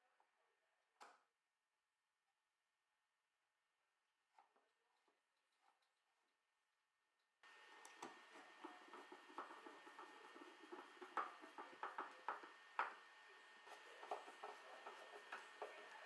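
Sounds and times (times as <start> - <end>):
faint steady hiss: 7.4 - 16.0.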